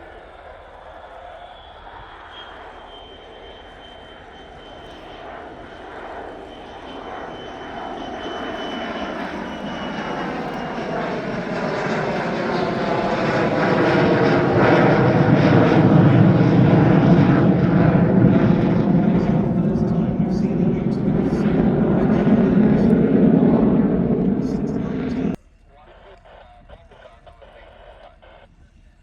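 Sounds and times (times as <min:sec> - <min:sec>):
aircraft engine roar: 0:00.0 - 0:29.0.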